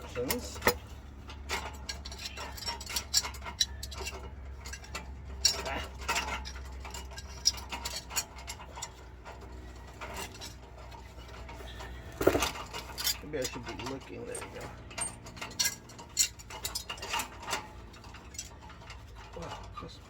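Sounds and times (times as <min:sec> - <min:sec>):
small metallic clicks and clinks: 0:00.0 - 0:20.0.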